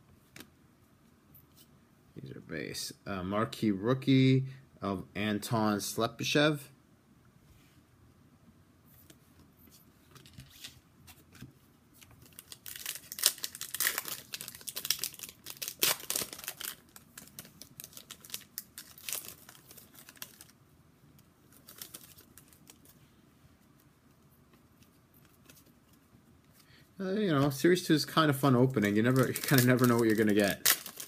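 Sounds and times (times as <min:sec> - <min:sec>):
foil wrapper crinkling: 0:12.1 - 0:20.6, 0:21.5 - 0:22.9, 0:28.6 - 0:31.0.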